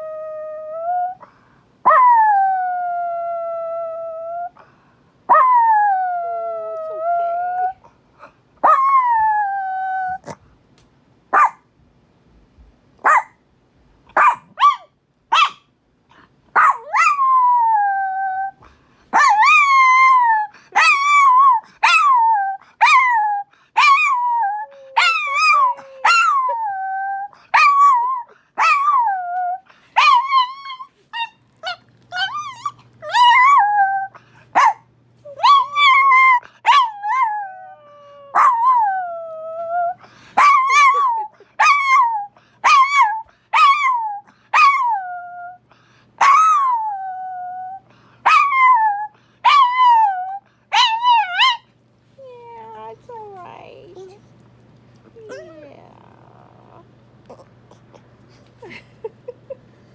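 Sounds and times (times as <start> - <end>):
small dog howling: 16.6 - 18.6, 19.2 - 45.6, 46.2 - 51.7
small dog yipping: 30.0 - 33.5, 50.7 - 51.6.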